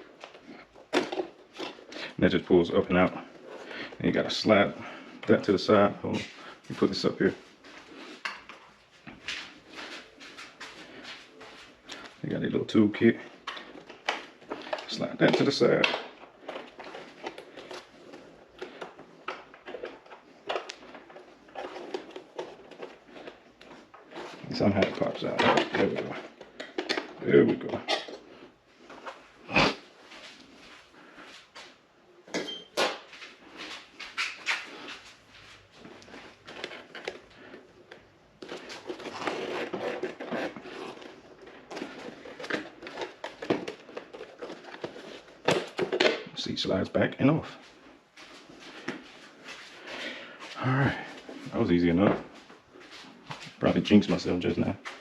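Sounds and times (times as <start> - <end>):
rustling and scraping of plastic: 0.0 - 31.8, 32.8 - 46.8, 47.4 - 55.0
plastic parts clicking and knocking: 0.2 - 1.9, 24.8 - 28.2, 36.5 - 46.3.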